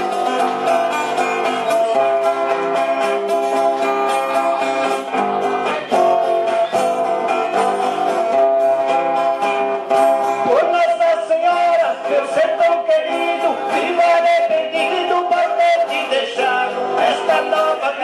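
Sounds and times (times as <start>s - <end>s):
plucked guitar-like strings: 0.0s - 10.6s.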